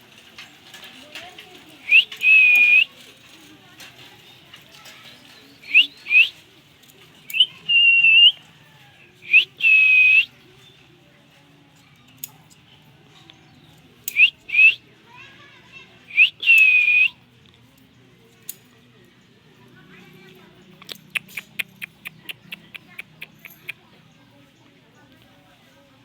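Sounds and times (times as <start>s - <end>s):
parrot whistling: 5.7s - 6.3s.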